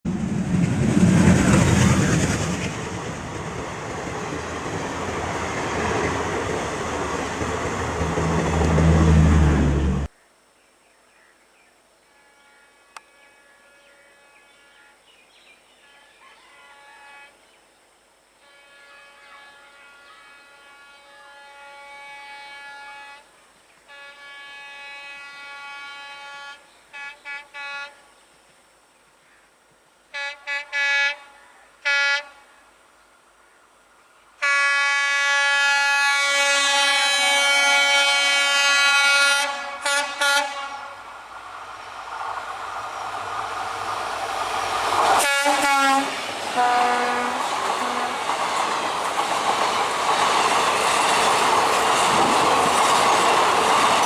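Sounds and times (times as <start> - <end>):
rail noise: 0.0 - 10.1, 30.1 - 54.0
diesel locomotive engine drone: 0.1 - 10.1, 35.0 - 54.0
passenger train running past: 0.1 - 10.1, 31.8 - 54.0
locomotive horn blasts: 7.1 - 10.1, 12.1 - 15.1, 15.8 - 17.4, 18.4 - 23.3, 23.9 - 28.1, 30.1 - 32.5, 34.4 - 41.3, 45.1 - 48.4.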